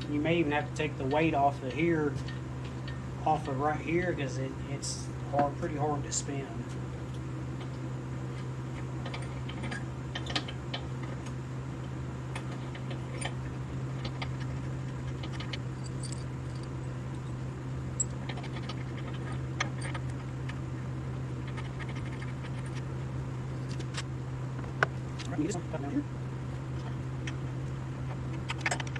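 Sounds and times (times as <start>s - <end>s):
steady low hum: 0.0s - 28.9s.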